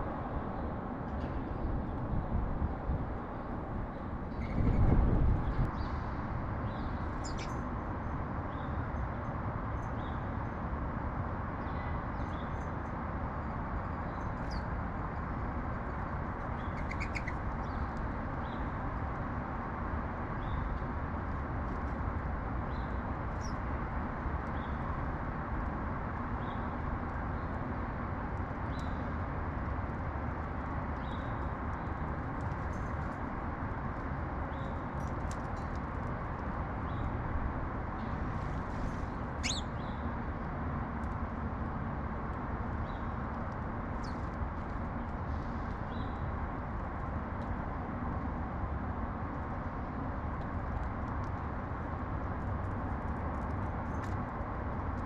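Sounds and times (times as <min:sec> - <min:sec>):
urban background rumble: 0:00.0 - 0:55.0
small birds chirping: 0:04.3 - 0:07.7, 0:15.8 - 0:18.7, 0:38.0 - 0:40.1.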